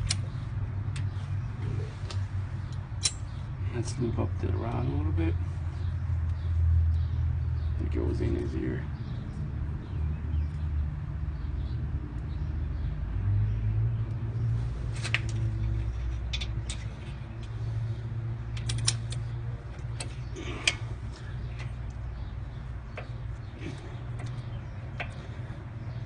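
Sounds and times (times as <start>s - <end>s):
steady low rumble: 0.0s - 26.0s
sharp metallic clicks and taps: 2.1s - 3.2s, 18.5s - 20.8s, 24.2s - 25.2s.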